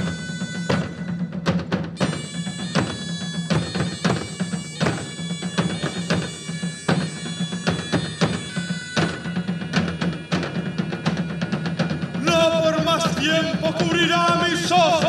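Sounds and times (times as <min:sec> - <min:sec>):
folk band playing: 0:00.0 - 0:15.0
drum hits: 0:09.9 - 0:15.0.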